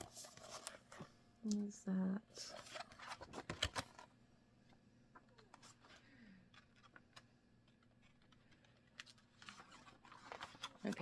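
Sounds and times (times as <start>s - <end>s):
paper rustling: 0.0s - 1.1s, 2.4s - 4.1s, 5.4s - 11.0s.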